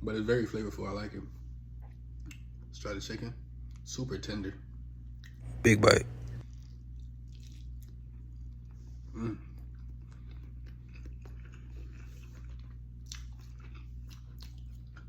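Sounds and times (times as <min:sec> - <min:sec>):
steady low hum: 0:05.4 - 0:06.4
person chewing food: 0:06.2 - 0:08.8, 0:09.5 - 0:15.0.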